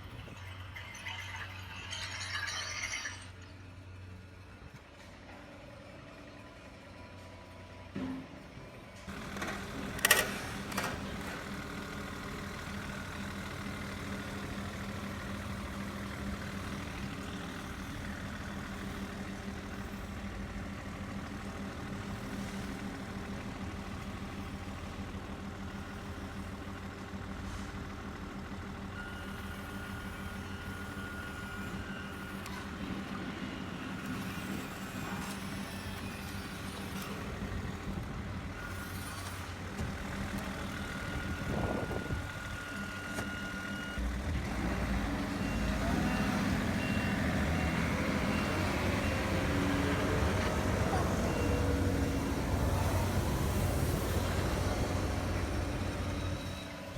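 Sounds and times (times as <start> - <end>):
model road roller motor hum: 0.0 - 56.9.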